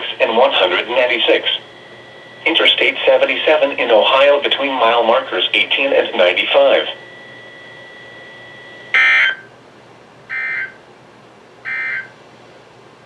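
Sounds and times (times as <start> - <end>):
warbling data bursts: 0.0 - 9.4, 11.7 - 12.1.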